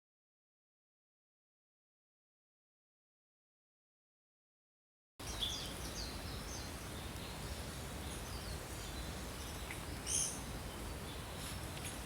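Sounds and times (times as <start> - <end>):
low outdoor background noise: 5.2 - 12.0.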